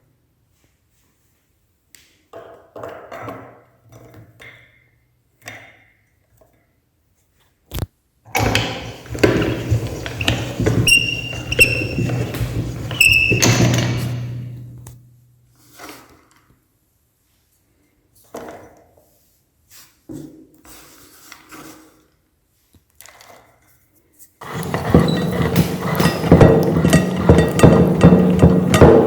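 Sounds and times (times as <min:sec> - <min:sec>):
short high squeaks: 0:08.4 - 0:14.6.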